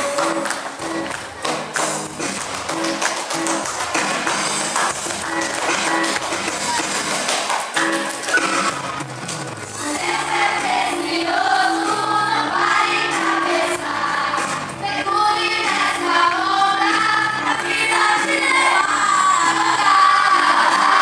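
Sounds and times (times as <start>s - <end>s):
instrumental accompaniment: 0.0s - 14.9s
children's choir singing: 9.8s - 21.0s.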